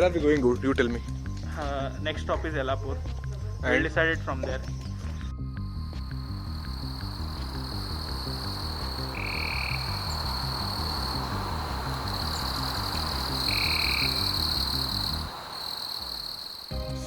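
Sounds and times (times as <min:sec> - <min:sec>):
short frog calls: 0:05.4 - 0:16.7
high-pitched insect drone: 0:05.4 - 0:16.9
low even pulsing: 0:05.6 - 0:16.3.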